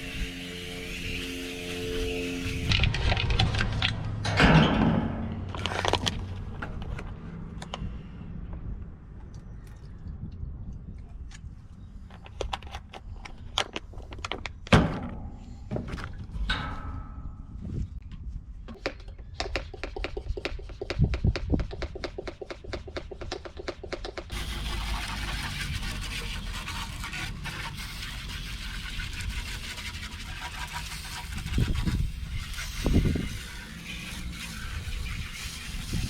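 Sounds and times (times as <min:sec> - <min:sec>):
scrubbing: 0:24.3 - 0:36.0.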